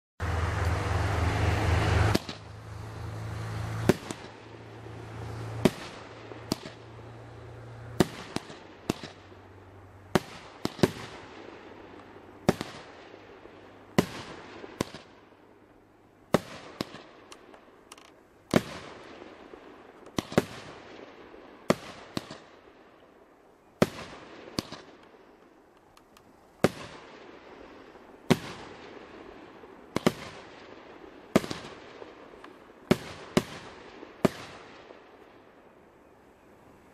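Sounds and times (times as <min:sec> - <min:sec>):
loud rushing noise with hum: 0:00.2 - 0:08.0
fireworks shots with hiss: 0:00.2 - 0:15.4, 0:16.3 - 0:17.9, 0:18.5 - 0:22.9, 0:23.7 - 0:25.8, 0:26.4 - 0:35.5.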